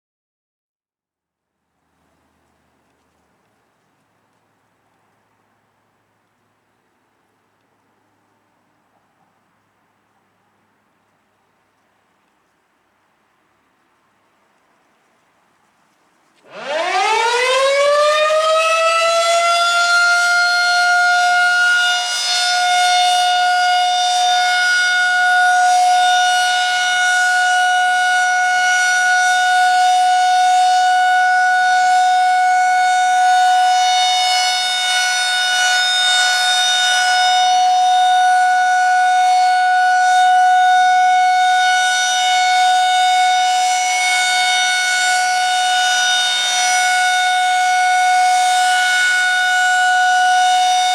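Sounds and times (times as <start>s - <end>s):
tornado siren wailing: 16.4s - 50.9s.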